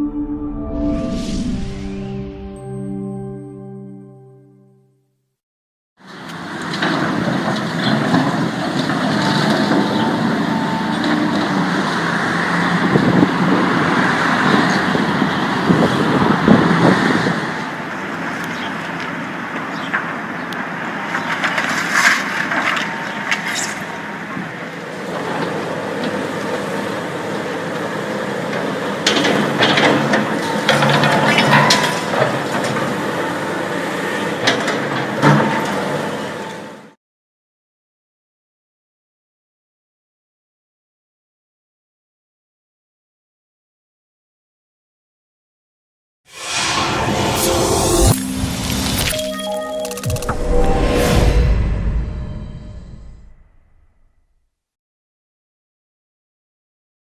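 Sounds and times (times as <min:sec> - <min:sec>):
demolition machinery running: 0:06.3 - 0:17.6, 0:20.9 - 0:36.8.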